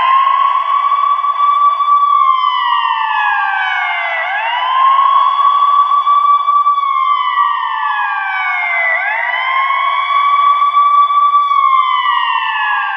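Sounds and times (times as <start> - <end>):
ambulance siren wailing: 0.0 - 12.9.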